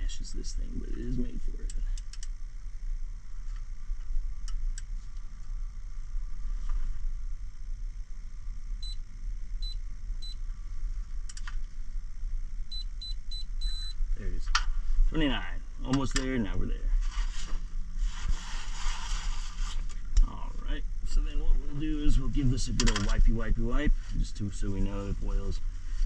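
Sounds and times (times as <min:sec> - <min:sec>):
torque wrench beeping: 0:12.7 - 0:14.0.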